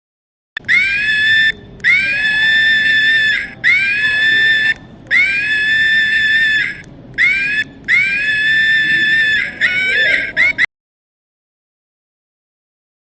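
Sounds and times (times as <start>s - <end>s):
high-pitched animal calls: 0.6s - 10.7s.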